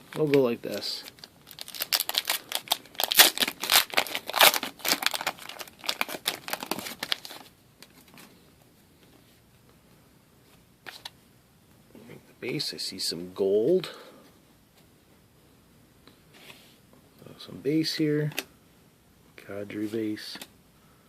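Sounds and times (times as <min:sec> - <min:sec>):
wrapper tearing and crinkling: 0:01.1 - 0:07.5.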